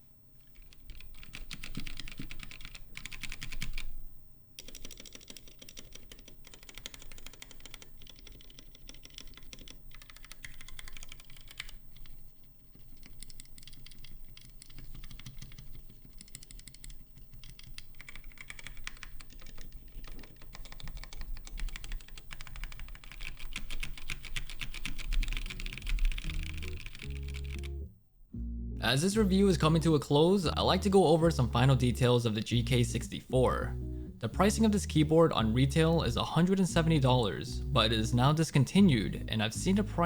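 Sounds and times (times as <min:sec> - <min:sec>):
mechanical keyboard keystrokes clacking: 0:00.4 - 0:04.0, 0:04.6 - 0:27.6.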